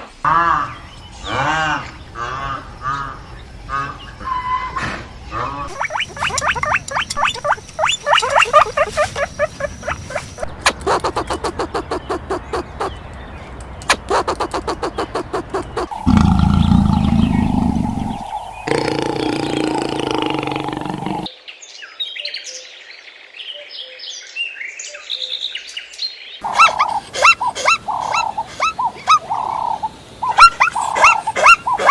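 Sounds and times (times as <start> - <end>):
animal chattering calls: 5.3 - 13.0, 13.9 - 21.3, 26.4 - 31.9
held pitched animal call: 14.1 - 21.3, 26.4 - 31.9
low rough animal call: 15.8 - 21.3.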